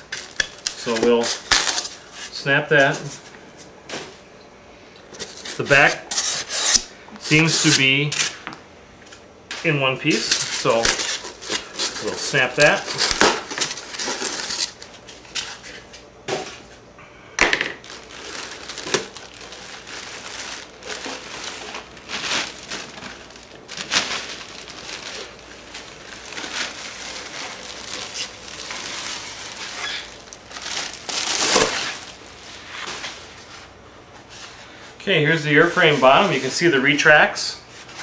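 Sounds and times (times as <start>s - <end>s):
packaging crackling and crinkling: 0.0s - 2.1s, 9.6s - 16.0s, 17.7s - 33.7s
packaging snapping: 10.1s - 15.5s, 17.8s - 32.2s.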